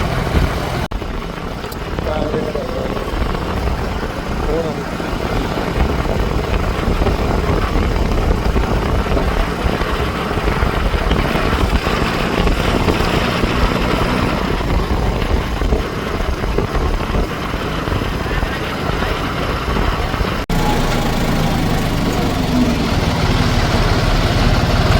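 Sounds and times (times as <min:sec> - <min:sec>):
tractor diesel engine running: 0:00.0 - 0:24.9.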